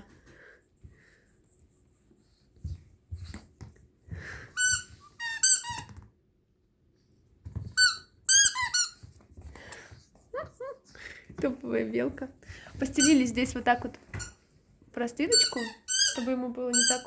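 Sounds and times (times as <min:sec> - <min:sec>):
dog toy squeaking: 0:04.6 - 0:05.9, 0:07.8 - 0:09.0, 0:12.9 - 0:13.3, 0:15.3 - 0:17.0.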